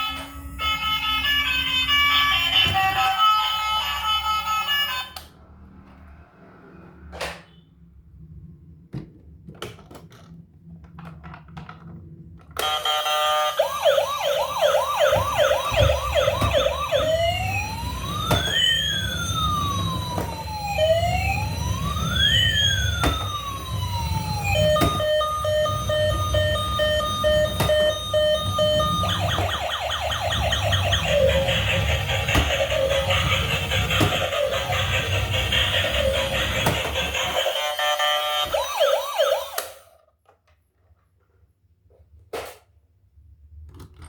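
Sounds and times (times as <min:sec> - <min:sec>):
electronic siren: 0:12.6 - 0:40.0.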